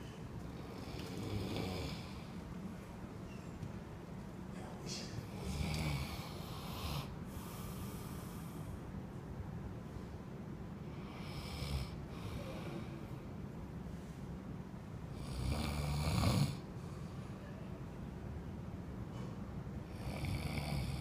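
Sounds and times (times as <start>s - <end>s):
steady low hum: 0.0s - 21.0s
person snoring: 0.6s - 2.4s, 5.3s - 8.6s, 15.2s - 16.6s.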